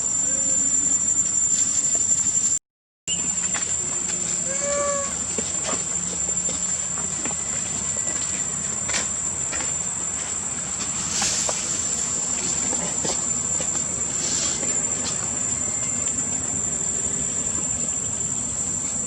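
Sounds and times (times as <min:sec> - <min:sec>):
insects buzzing: 0:00.0 - 0:19.0.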